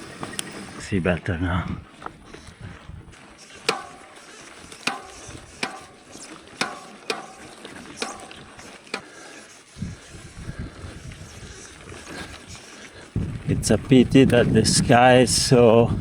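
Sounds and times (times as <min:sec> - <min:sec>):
bicycle knocking over rough trail: 0:00.0 - 0:16.0
wind rumbling on microphone: 0:00.7 - 0:03.2, 0:09.7 - 0:16.0.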